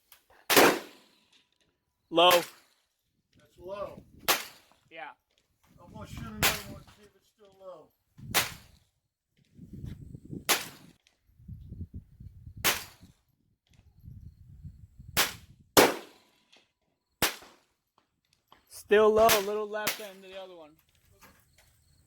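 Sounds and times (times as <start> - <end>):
rifle shots: 0.5 - 1.1, 4.3 - 4.7, 15.2 - 16.3, 17.2 - 17.6.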